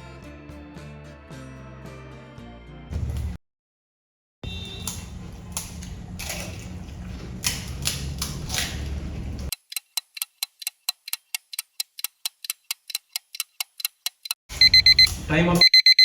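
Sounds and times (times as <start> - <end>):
timer alarm beeping: 14.6 - 16.0.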